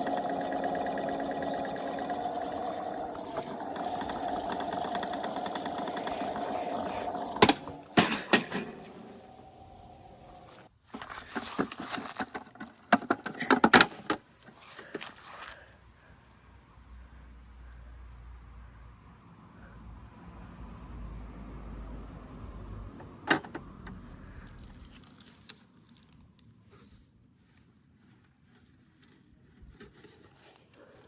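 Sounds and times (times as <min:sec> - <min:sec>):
small electric motor humming: 0:00.0 - 0:08.0.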